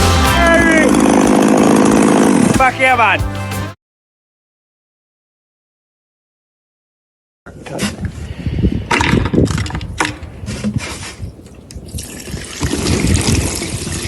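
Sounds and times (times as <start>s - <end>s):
liquid pouring and splashing: 11.9s - 14.0s.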